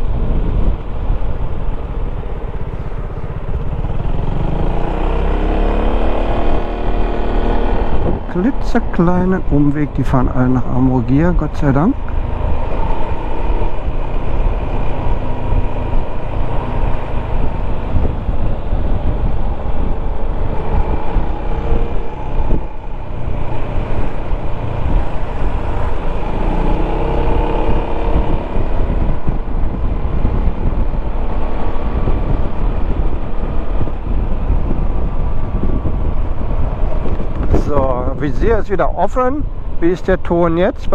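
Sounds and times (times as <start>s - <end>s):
wind and road noise: 0.0s - 40.9s
scooter engine running: 0.1s - 8.2s.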